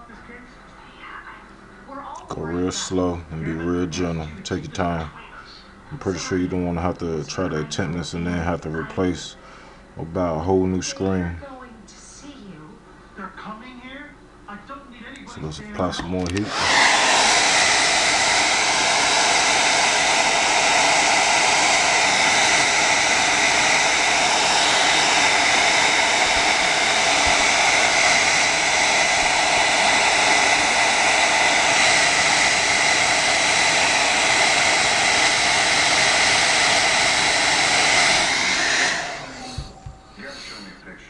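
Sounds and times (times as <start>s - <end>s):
hair dryer running: 15.4s - 40.7s.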